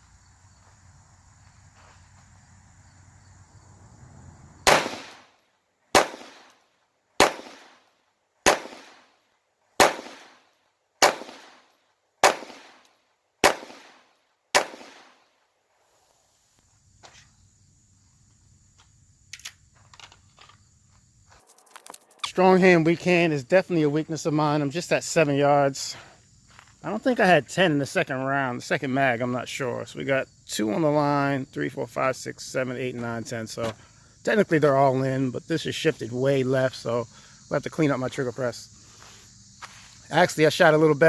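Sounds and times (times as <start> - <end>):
pistol shots with echo: 4.6 - 5.3, 6.0 - 6.5, 7.2 - 7.8, 8.4 - 9.1, 9.8 - 10.4, 11.0 - 11.6, 12.2 - 12.8, 13.4 - 14.0, 14.6 - 15.2.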